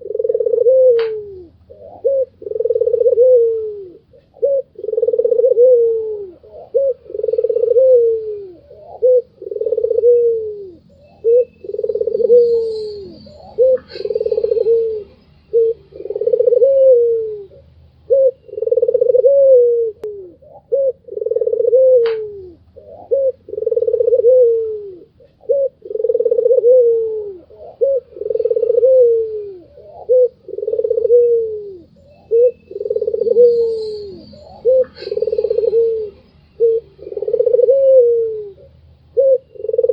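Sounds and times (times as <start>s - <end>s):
dove cooing: 0.0s - 39.9s
small bird chirping: 6.4s - 19.2s, 20.0s - 39.9s.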